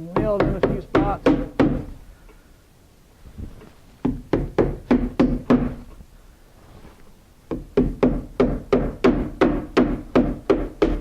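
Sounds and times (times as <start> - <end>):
hammer driving nails: 0.2 - 2.0, 4.0 - 5.8, 7.5 - 11.0.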